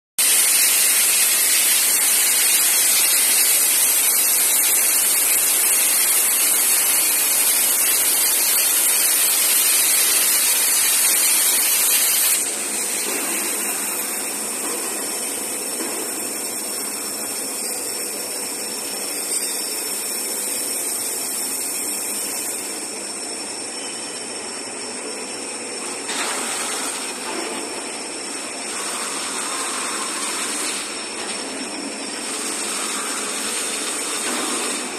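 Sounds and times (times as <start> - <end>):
cutting torch hissing: 0.2 - 22.8.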